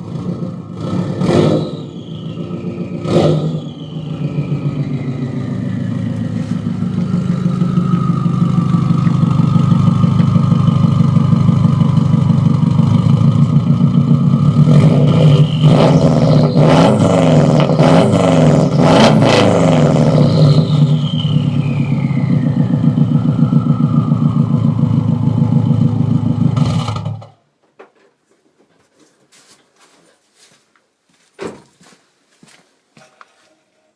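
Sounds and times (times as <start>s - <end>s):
car engine revving: 0.0s - 27.4s
car engine idling: 1.8s - 27.4s.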